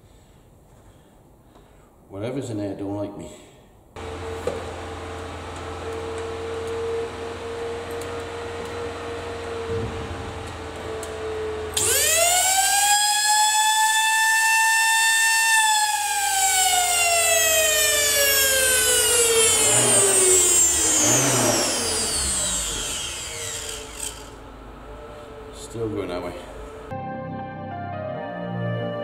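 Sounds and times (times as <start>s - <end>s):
vacuum cleaner motor whining: 4.0s - 25.6s.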